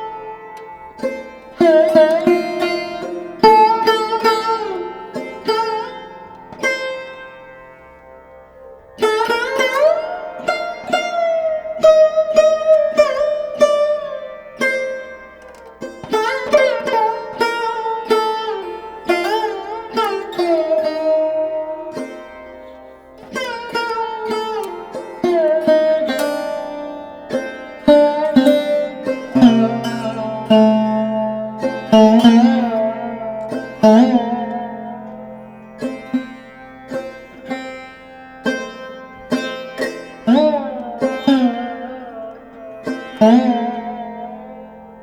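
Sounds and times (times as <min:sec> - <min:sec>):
plucked string instrument: 0:00.0 - 0:45.0.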